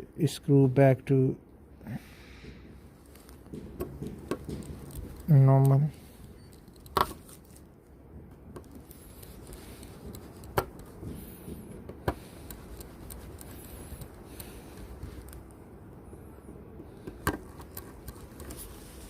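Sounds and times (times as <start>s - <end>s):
screwdriver clicking on phone frame: 3.8s - 7.4s, 12.0s - 15.4s.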